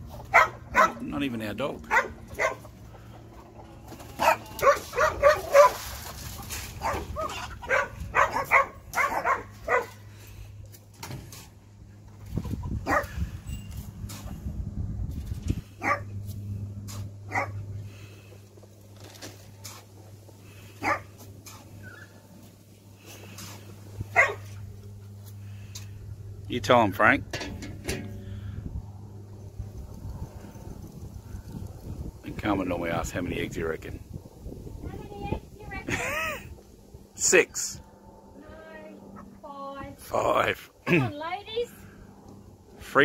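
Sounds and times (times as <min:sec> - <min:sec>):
dog barking: 0:00.3 - 0:01.0, 0:01.9 - 0:02.7, 0:04.2 - 0:05.8, 0:06.8 - 0:10.0, 0:12.9 - 0:13.1, 0:15.8 - 0:16.1, 0:17.3 - 0:17.6, 0:20.8 - 0:21.1, 0:24.2 - 0:24.5.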